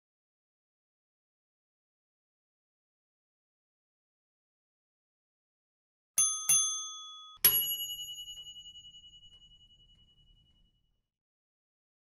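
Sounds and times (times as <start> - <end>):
bell-like chimes ringing: 6.2 - 11.0.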